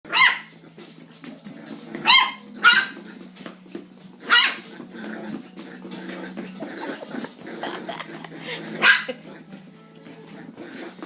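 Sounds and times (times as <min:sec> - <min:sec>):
puppy yipping: 0:00.1 - 0:00.6, 0:02.0 - 0:03.0, 0:04.2 - 0:04.6.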